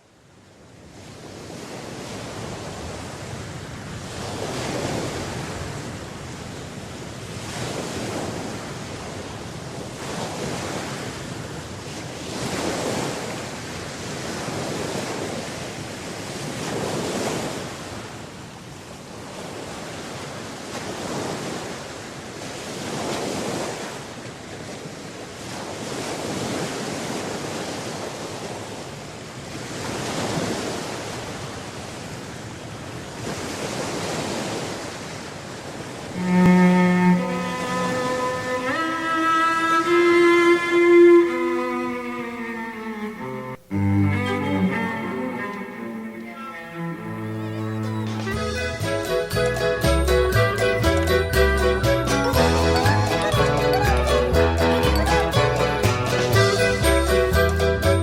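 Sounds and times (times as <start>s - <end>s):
ocean waves washing in: 0.6s - 49.3s.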